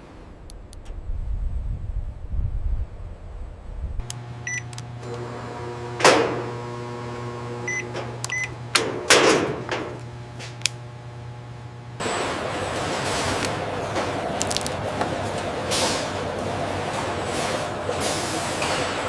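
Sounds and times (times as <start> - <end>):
electrical machine hum: 2.6 - 19.0
loud clunks: 5.9 - 6.6, 7.8 - 10.1.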